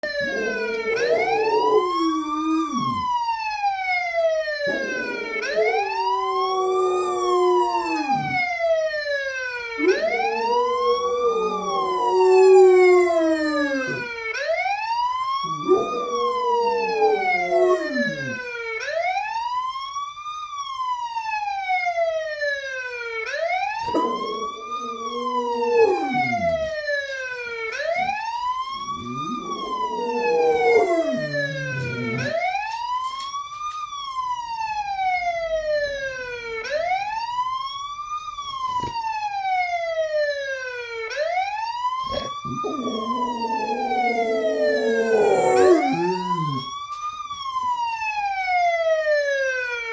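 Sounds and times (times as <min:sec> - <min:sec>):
dog howling: 0:00.0 - 0:03.2, 0:04.6 - 0:08.6, 0:09.8 - 0:14.3, 0:15.4 - 0:18.5, 0:23.8 - 0:27.0, 0:28.8 - 0:32.6, 0:42.1 - 0:46.7
wailing emergency siren: 0:00.0 - 0:49.9.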